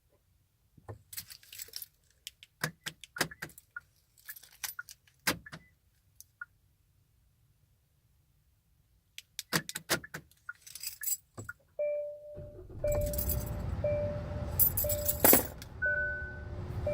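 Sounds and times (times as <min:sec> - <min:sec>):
keys jangling: 0:01.1 - 0:02.2, 0:04.1 - 0:05.1, 0:10.5 - 0:11.3, 0:12.8 - 0:13.6, 0:14.5 - 0:15.7
dashboard warning chime: 0:11.8 - 0:16.9
low steady rumble: 0:12.4 - 0:16.9.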